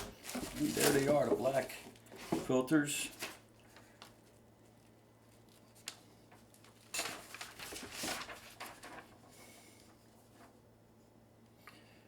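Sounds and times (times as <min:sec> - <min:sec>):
packaging rustling: 0:00.0 - 0:01.7, 0:05.4 - 0:09.3.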